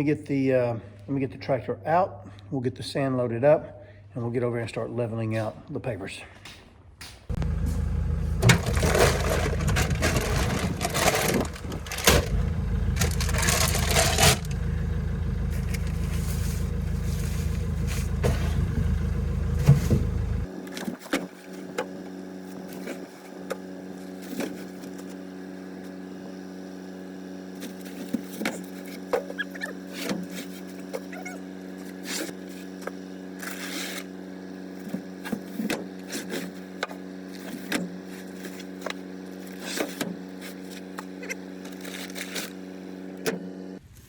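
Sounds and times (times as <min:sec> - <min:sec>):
tractor engine running: 0:07.3 - 0:43.8
loud rushing scraping: 0:08.4 - 0:14.6.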